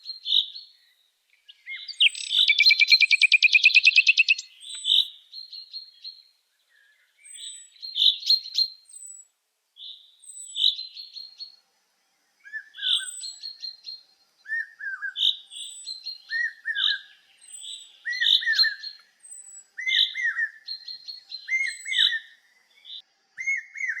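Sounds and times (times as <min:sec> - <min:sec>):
songbirds chirping: 0:00.0 - 0:24.0
down-slurred bird calls: 0:01.5 - 0:05.1.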